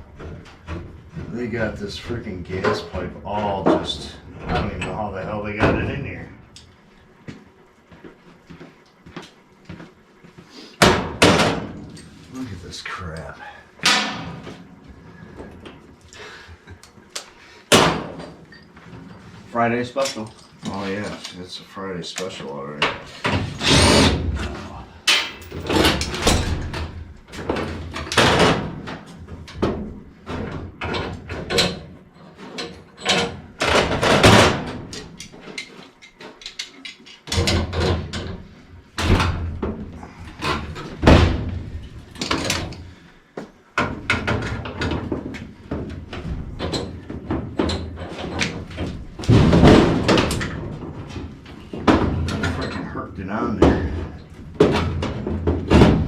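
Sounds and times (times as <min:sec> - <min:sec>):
sheet metal clanking: 0:13.8 - 0:14.6.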